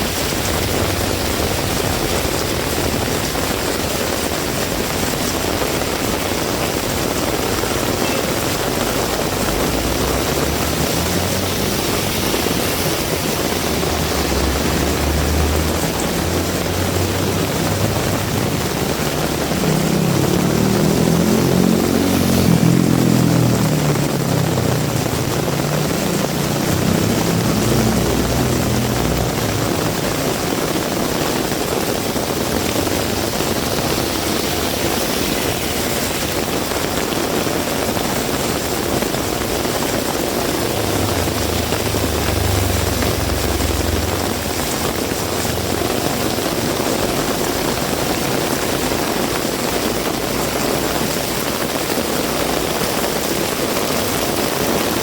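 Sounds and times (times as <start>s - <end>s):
heavy rain: 0.0s - 55.0s
vehicle engine passing: 0.0s - 55.0s.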